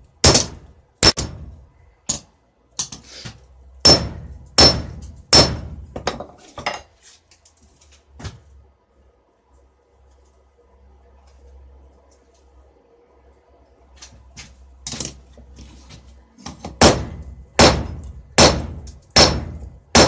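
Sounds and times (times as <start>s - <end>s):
hammer striking steel on anvil: 0.2s - 1.5s, 3.8s - 5.8s, 16.8s - 20.0s.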